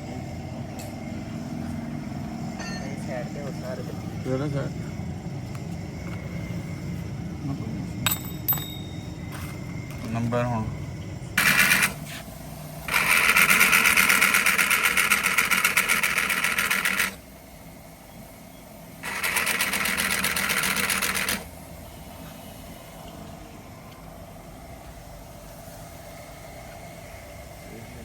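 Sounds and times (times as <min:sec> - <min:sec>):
power tool rattling hammer: 0:11.4 - 0:12.0, 0:12.8 - 0:17.2, 0:19.0 - 0:21.5.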